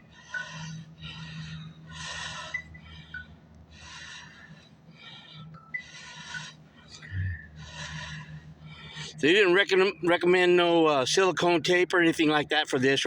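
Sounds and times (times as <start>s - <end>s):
person breathing hard: 0.0s - 9.2s.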